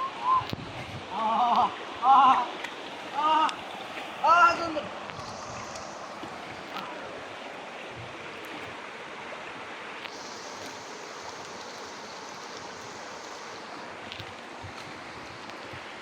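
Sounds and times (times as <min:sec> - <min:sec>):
stream water flowing: 0:00.0 - 0:16.0
high even hiss: 0:03.0 - 0:07.4, 0:10.0 - 0:14.3.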